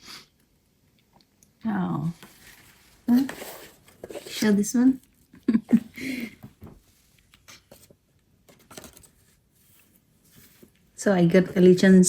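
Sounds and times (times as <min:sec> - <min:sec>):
parcel contents rustling: 0:02.2 - 0:05.1.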